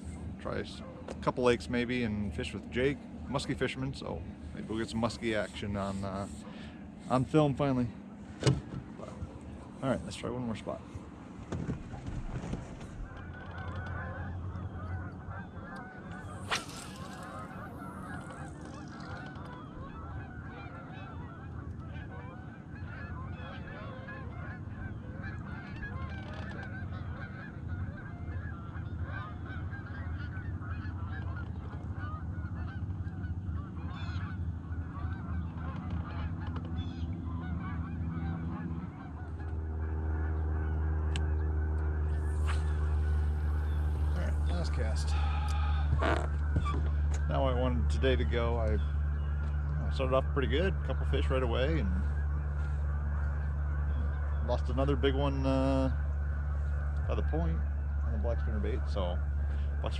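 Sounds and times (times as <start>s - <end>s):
low steady motor hum: 0.0s - 59.9s
geese honking: 3.4s - 11.0s, 12.4s - 59.9s.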